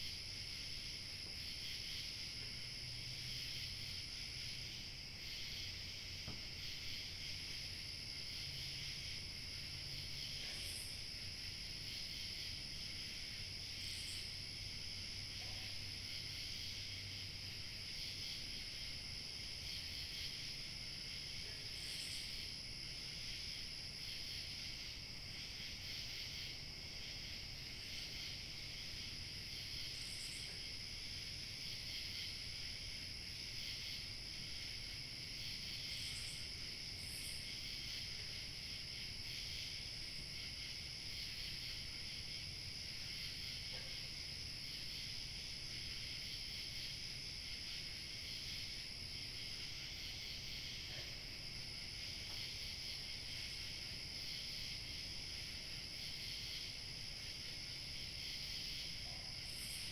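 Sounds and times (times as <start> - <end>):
crickets chirping: 0.0 - 59.9
high thin insect tone: 34.6 - 42.4.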